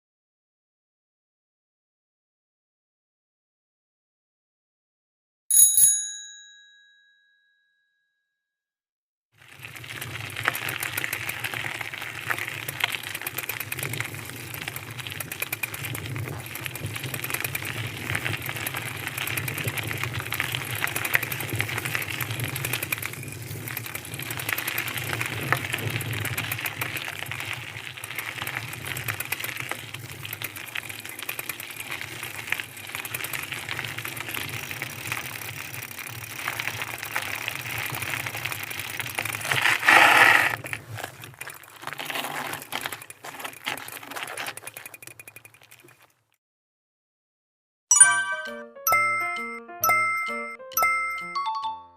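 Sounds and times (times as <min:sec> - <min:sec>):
bicycle rattling and clicking: 0:09.4 - 0:46.3.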